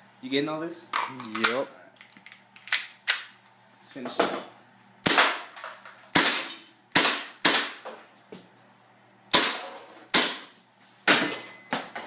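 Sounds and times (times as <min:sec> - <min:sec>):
airsoft pistol shots: 0:06.1 - 0:07.8, 0:09.3 - 0:10.5.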